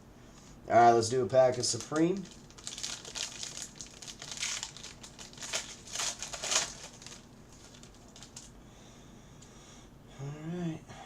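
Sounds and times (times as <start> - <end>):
foil wrapper tearing and crinkling: 1.4 - 8.5.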